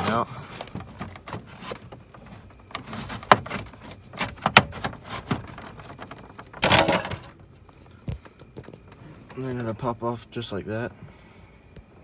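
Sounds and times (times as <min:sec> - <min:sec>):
plastic scraping rattle: 0:00.0 - 0:07.4.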